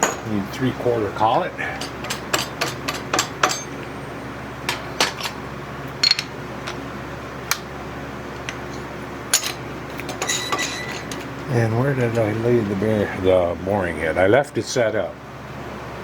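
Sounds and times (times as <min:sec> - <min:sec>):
metal tooling clinking: 0:00.0 - 0:00.4, 0:01.6 - 0:03.9, 0:06.0 - 0:06.8, 0:08.6 - 0:11.3
steady low hum: 0:00.0 - 0:16.0.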